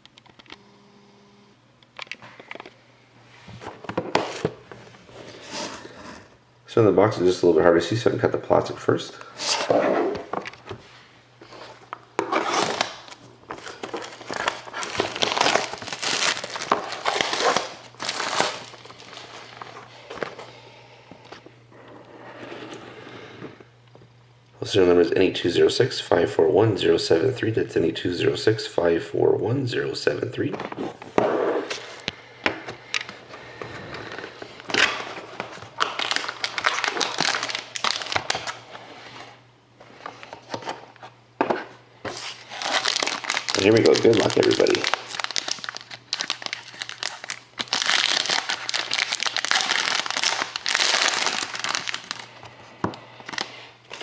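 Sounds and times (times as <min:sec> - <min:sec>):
plastic shrink-wrap crinkling: 0:12.2 - 0:20.4, 0:34.0 - 0:38.8, 0:42.1 - 0:52.4, 0:53.2 - 0:54.0.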